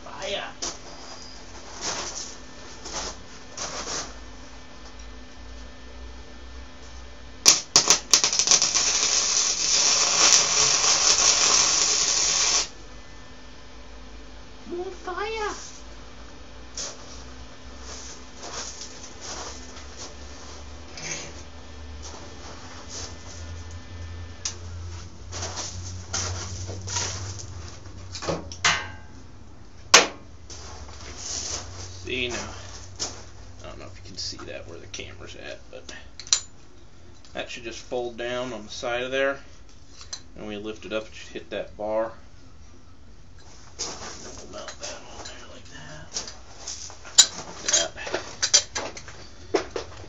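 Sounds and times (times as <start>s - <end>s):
steady low hum: 0.0s - 50.0s
welder arc crackling: 7.4s - 12.8s
metal clank: 28.6s - 29.1s.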